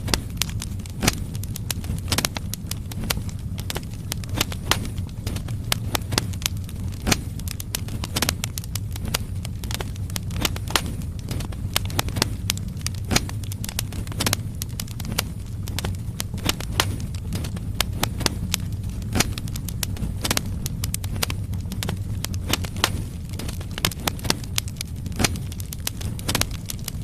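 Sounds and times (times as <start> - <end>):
logs crackling and popping: 0.0 - 27.0
low rumble of fire: 0.0 - 27.0.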